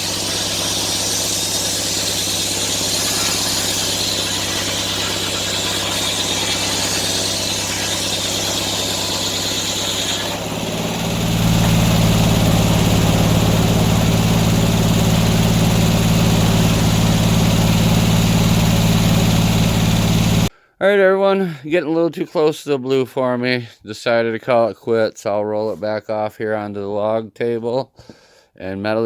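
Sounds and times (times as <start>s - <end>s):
saw blade hissing through log: 0.0s - 20.5s
sawmill engine running: 0.0s - 20.5s.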